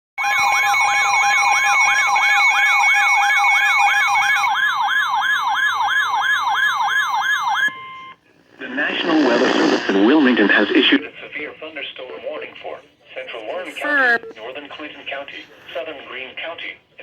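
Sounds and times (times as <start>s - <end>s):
electronic sweeping siren: 0.2s - 8.2s.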